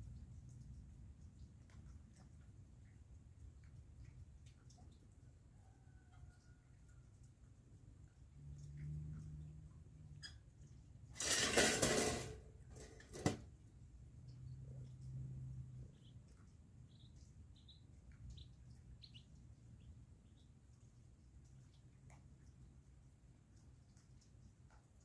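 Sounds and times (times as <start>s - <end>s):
metal cage trap rattling: 11.2s - 13.4s.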